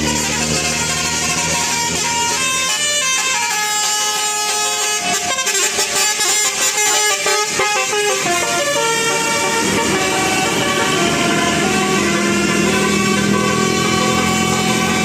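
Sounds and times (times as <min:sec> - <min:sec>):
musical vehicle horn playing a tune: 0:00.0 - 0:15.0.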